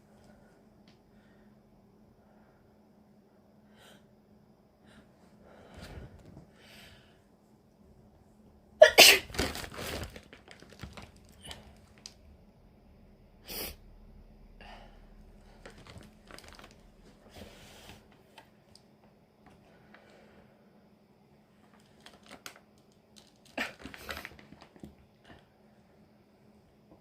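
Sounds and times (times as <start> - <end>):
woman sneezing: 8.8 - 9.4
faint clicks and rustles: 15.4 - 20.1.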